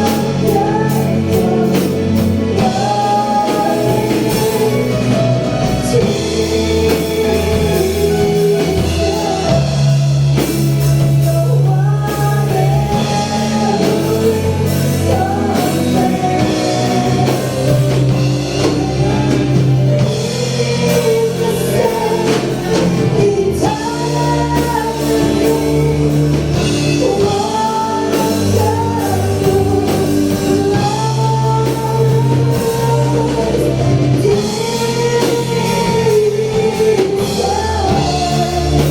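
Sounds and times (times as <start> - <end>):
band playing worship song: 0.0 - 38.9
person singing: 0.0 - 38.9.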